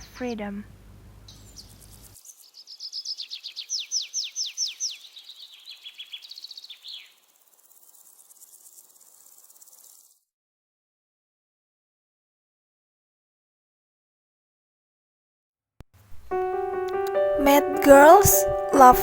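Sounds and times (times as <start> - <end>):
high bird trill: 1.3 - 10.1
bird song with sliding notes: 2.3 - 10.0.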